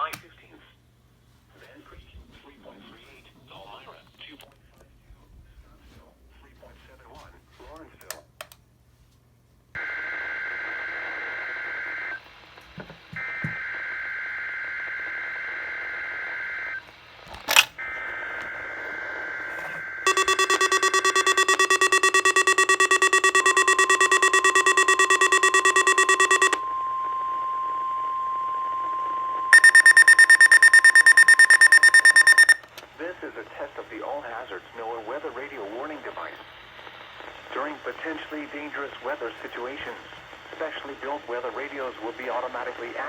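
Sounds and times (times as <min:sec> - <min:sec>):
steady warning tone: 0:17.9 - 0:32.6
alarm buzzing in rapid pulses: 0:19.8 - 0:26.9, 0:29.5 - 0:32.6
harsh alarm beeping rapidly: 0:20.0 - 0:26.6, 0:29.5 - 0:32.6
two-tone data bursts: 0:20.1 - 0:27.0, 0:29.5 - 0:32.6.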